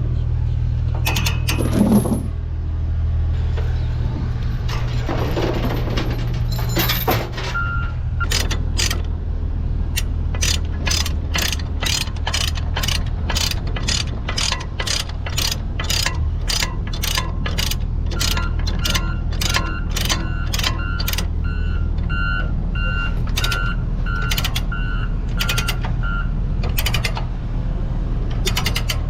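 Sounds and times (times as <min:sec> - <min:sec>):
diesel engine idling: 0:07.8 - 0:29.0
sharp clicks: 0:08.2 - 0:09.1, 0:10.0 - 0:21.3, 0:23.3 - 0:24.7, 0:25.3 - 0:25.9, 0:26.6 - 0:27.2, 0:28.3 - 0:29.0.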